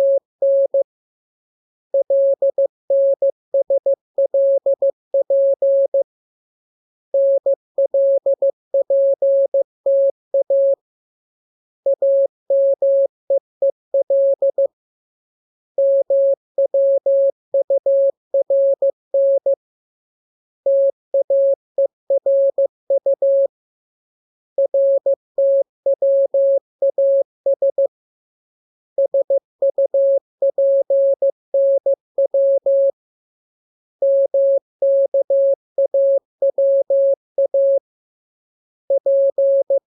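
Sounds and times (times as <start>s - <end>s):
morse code beeps: 34.0s - 37.8s, 38.9s - 39.8s.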